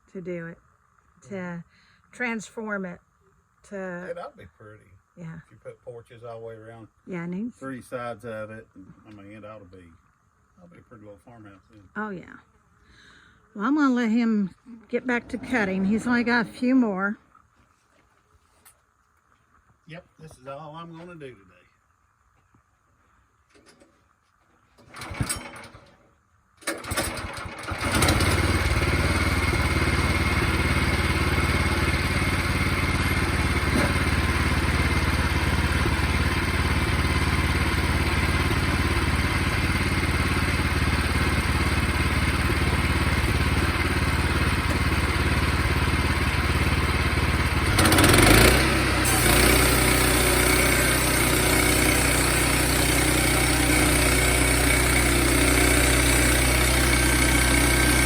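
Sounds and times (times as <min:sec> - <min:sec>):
gas engine starting and running: 0:14.9 - 0:17.0, 0:24.8 - 0:58.0.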